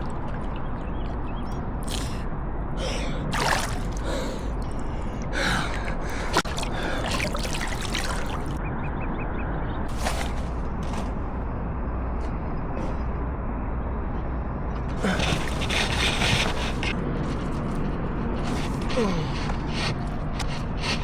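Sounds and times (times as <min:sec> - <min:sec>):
person breathing hard: 0:01.9 - 0:08.6, 0:15.0 - 0:16.9, 0:18.4 - 0:21.0.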